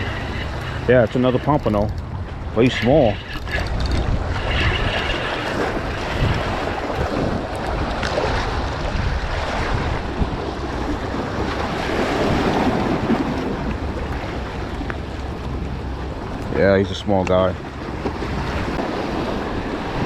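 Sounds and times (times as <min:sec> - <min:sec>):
surf and water: 0:00.0 - 0:20.0
wind buffeting microphone: 0:00.0 - 0:20.0.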